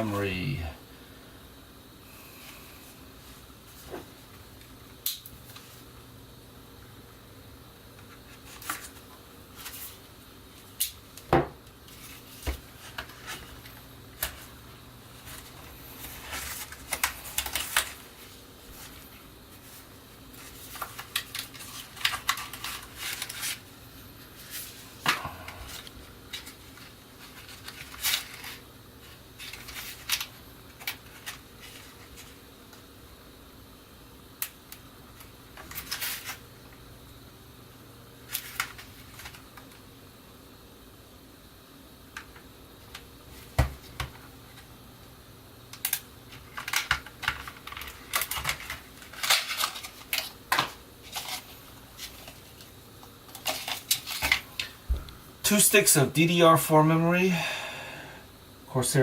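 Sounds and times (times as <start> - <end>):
faint steady hum: 0.0 - 59.0
plastic rustling: 14.2 - 32.4, 46.3 - 55.2.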